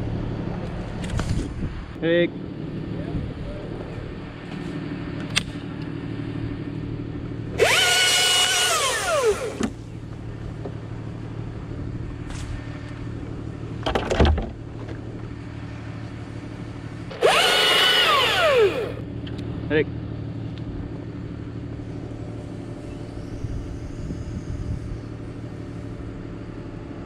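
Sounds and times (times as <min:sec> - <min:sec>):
chainsaw revving: 0:07.6 - 0:09.6, 0:17.1 - 0:19.0.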